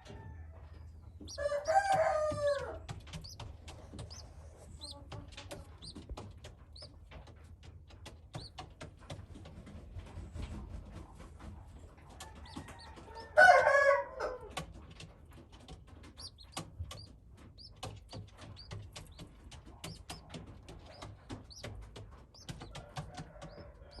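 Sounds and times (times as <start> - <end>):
rooster crowing: 0.0 - 0.7, 1.3 - 2.9, 12.2 - 14.6, 22.8 - 24.0
chicks peeping: 0.0 - 24.0.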